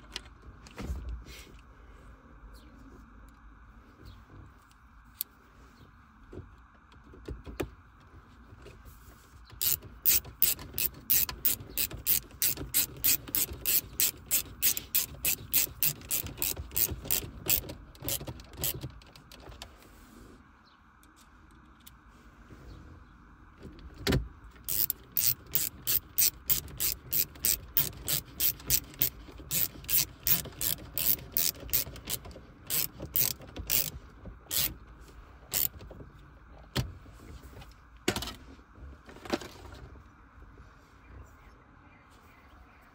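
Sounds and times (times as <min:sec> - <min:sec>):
ratchet clicking: 0:09.6 - 0:19.2, 0:24.7 - 0:34.8, 0:35.5 - 0:35.7.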